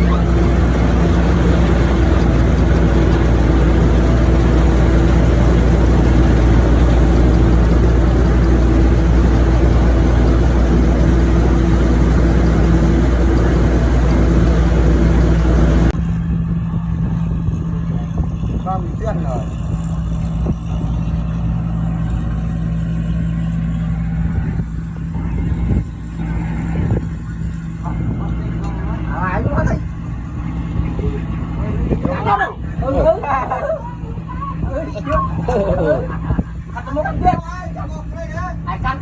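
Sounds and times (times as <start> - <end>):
dense rushing noise: 0.0 - 16.0
motor engine running: 0.0 - 16.0.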